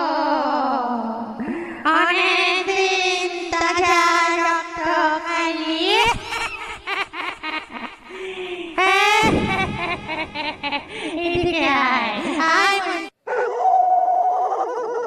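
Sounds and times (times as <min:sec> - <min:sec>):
eerie wordless voice singing: 0:00.0 - 0:06.4.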